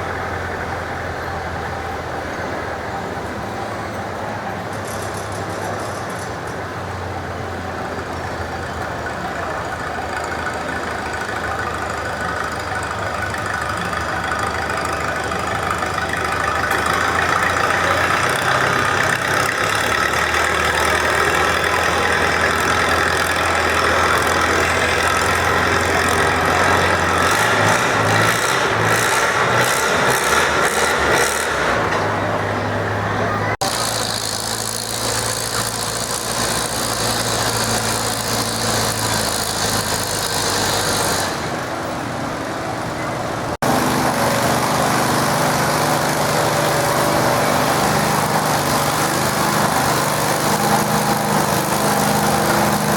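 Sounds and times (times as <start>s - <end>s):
tractor engine under load: 0.0s - 52.9s.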